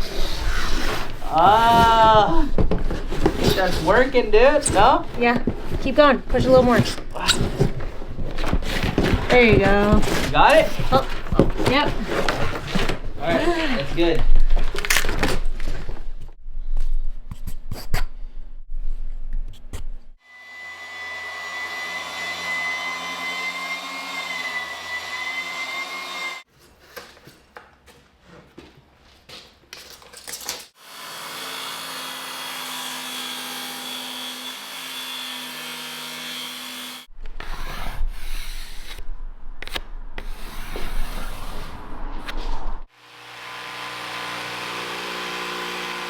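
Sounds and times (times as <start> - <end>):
power saw cutting wood: 20.2 - 26.5, 30.8 - 37.7, 42.9 - 46.0.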